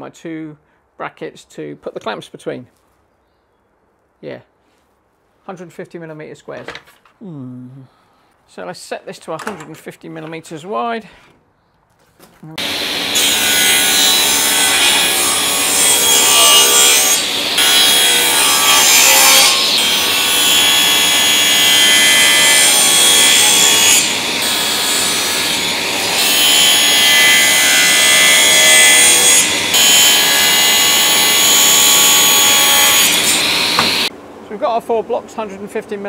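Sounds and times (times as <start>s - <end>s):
power saw cutting plywood: 12.6s - 34.1s.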